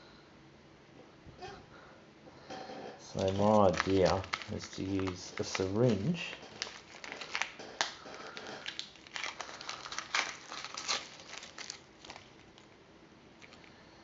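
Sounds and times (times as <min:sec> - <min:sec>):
packaging crinkling and rustling: 0:03.0 - 0:12.8, 0:13.4 - 0:13.8.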